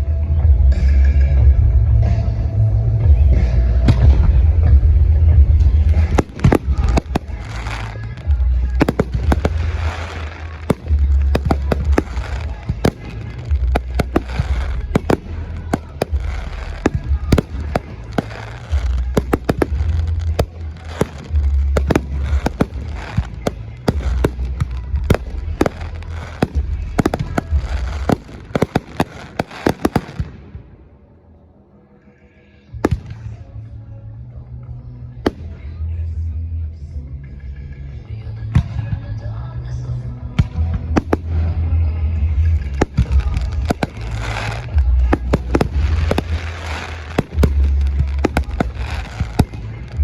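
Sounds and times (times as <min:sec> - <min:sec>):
deep fireworks booms: 0:03.8 - 0:30.9, 0:40.4 - 0:50.0
fireworks bangs: 0:03.9 - 0:31.0, 0:40.4 - 0:50.0
fireworks crackle: 0:04.4 - 0:30.7, 0:40.7 - 0:50.0.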